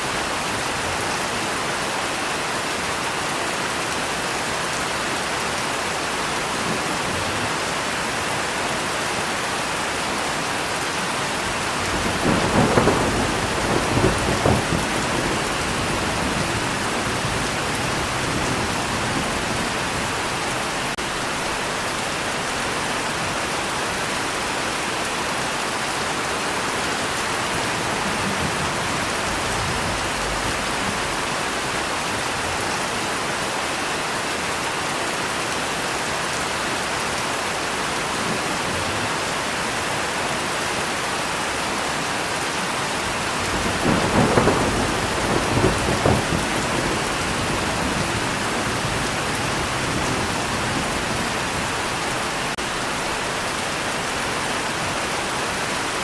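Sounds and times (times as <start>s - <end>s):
heavy rain: 0.0s - 56.0s
thunder rumbling: 11.2s - 21.9s, 27.2s - 32.6s, 43.0s - 53.1s.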